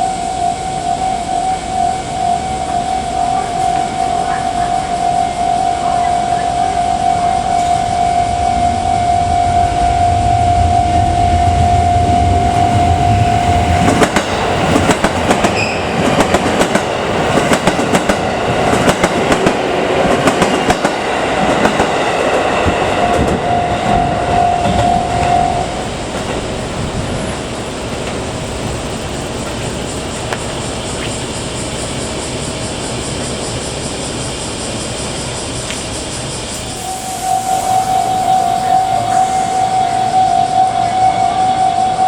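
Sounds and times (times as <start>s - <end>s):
steady high tone: 0.0s - 35.4s, 36.0s - 42.0s
train wheels clattering over rail joints: 13.5s - 34.2s.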